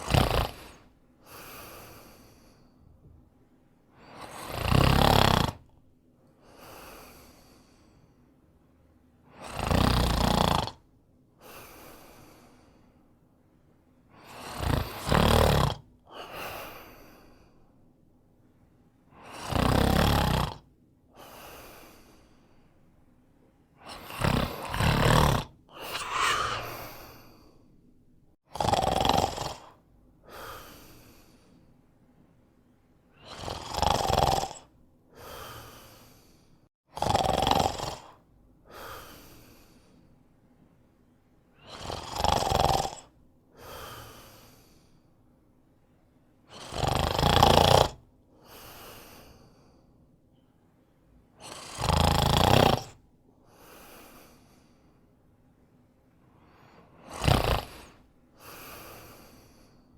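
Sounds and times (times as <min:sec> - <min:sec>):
man snoring: 0:00.0 - 0:02.6, 0:04.0 - 0:05.7, 0:09.3 - 0:10.8, 0:14.2 - 0:17.4, 0:19.2 - 0:22.3, 0:23.8 - 0:27.5, 0:28.5 - 0:31.2, 0:33.2 - 0:39.4, 0:41.6 - 0:44.8, 0:46.5 - 0:49.0, 0:51.4 - 0:53.0, 0:57.0 - 0:59.8
quiet breath: 0:00.0 - 0:04.4, 0:05.6 - 0:09.5, 0:10.8 - 0:15.1, 0:15.9 - 0:19.5, 0:20.5 - 0:28.4, 0:29.5 - 0:33.4, 0:34.4 - 0:36.8, 0:38.2 - 0:41.8, 0:43.5 - 0:46.6, 0:48.3 - 0:51.6, 0:53.4 - 0:59.9.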